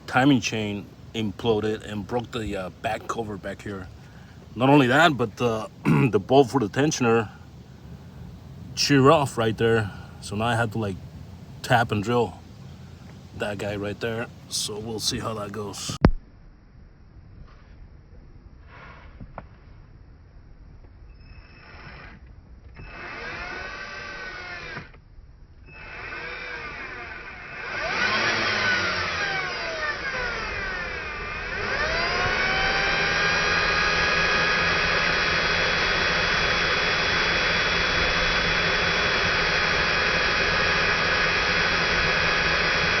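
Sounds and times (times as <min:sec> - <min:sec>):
electric drill drilling: 0:00.0 - 0:05.6, 0:21.6 - 0:22.2, 0:22.8 - 0:25.0, 0:25.7 - 0:43.0.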